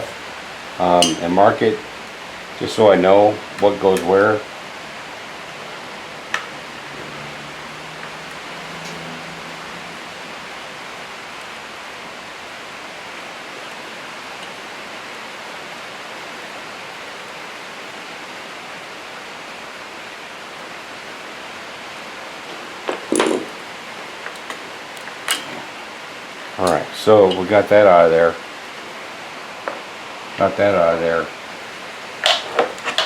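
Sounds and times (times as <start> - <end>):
steady hiss: 0.0 - 33.0
small parts and tools clattering: 22.8 - 23.6, 24.2 - 25.7, 32.2 - 33.0.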